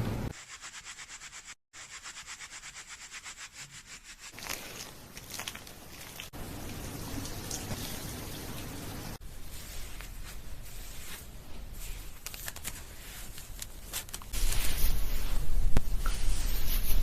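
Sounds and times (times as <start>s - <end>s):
hair and scalp being rubbed: 0.3s - 6.4s, 9.2s - 17.0s.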